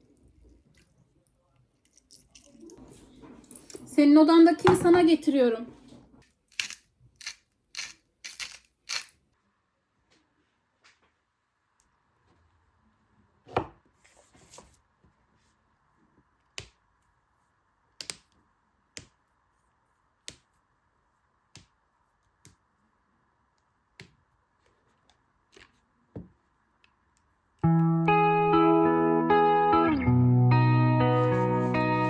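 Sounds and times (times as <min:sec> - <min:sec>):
guitar music: 0:27.6 - 0:32.0.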